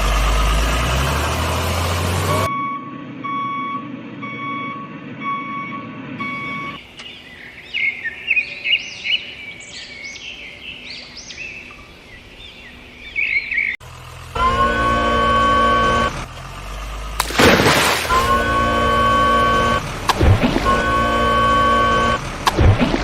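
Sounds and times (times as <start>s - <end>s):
vehicle reversing beeper: 2.3s - 6.8s, 18.1s - 19.9s, 20.6s - 22.2s
birds chirping: 6.2s - 13.8s.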